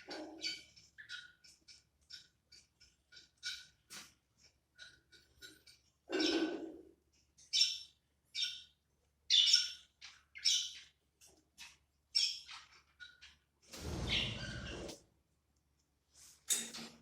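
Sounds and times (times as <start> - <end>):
budgerigars chirping: 9.3 - 10.9.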